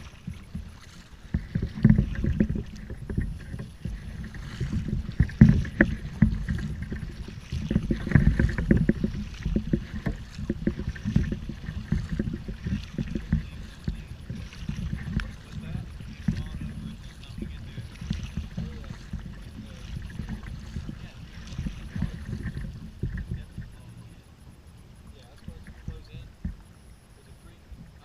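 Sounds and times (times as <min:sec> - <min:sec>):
dull knocks against kayak hull: 0:00.0 - 0:23.9, 0:25.4 - 0:26.7.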